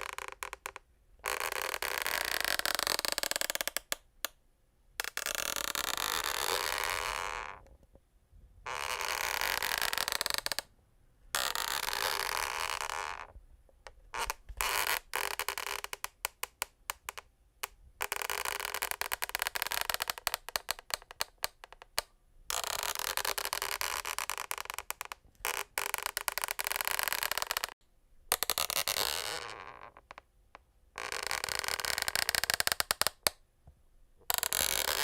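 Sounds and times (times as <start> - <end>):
wooden floor creaking: 0.0 - 3.9, 8.7 - 10.7, 11.4 - 13.4, 22.9 - 27.8.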